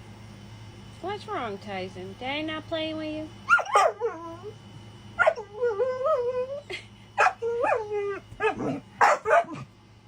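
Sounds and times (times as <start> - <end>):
dog yipping: 3.5 - 4.2, 5.2 - 5.5, 7.2 - 9.6
dog whining: 3.5 - 4.6, 5.2 - 9.7.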